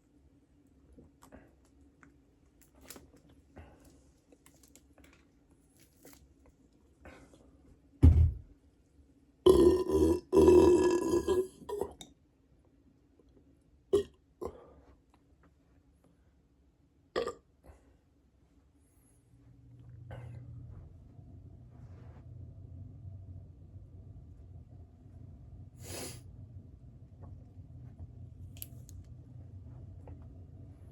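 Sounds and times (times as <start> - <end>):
person burping: 9.5 - 12.0, 14.0 - 14.6, 17.2 - 17.4.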